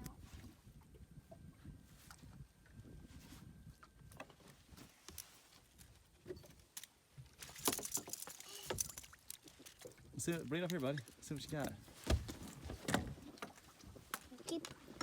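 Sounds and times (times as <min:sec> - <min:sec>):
fishing reel clicks and rattles: 0:07.4 - 0:09.7.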